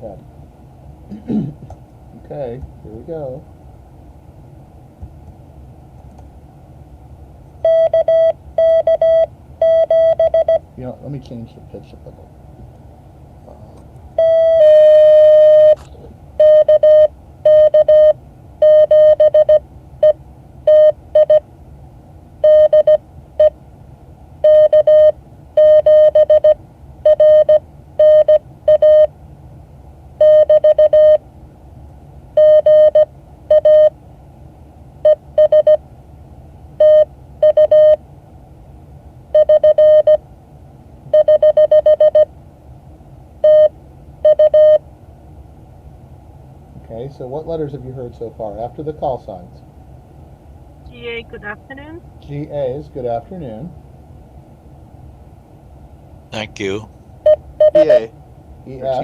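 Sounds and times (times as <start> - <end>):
morse code beeps: 7.6 - 10.6, 14.2 - 15.8, 16.4 - 21.4, 22.4 - 23.5, 24.4 - 29.1, 30.2 - 31.2, 32.4 - 33.9, 35.1 - 35.8, 36.8 - 38.0, 39.4 - 40.2, 41.1 - 42.3, 43.4 - 44.8, 57.3 - 58.1.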